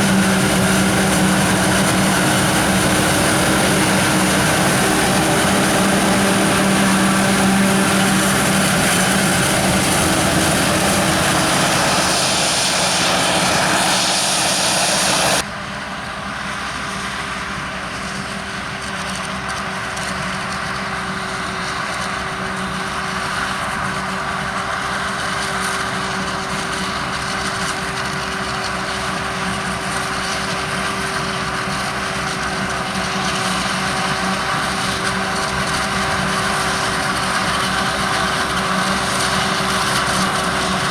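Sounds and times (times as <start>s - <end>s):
heavy farm machinery running: 0.0s - 15.4s, 20.4s - 40.9s
steady engine hum: 0.0s - 15.5s, 31.5s - 40.9s.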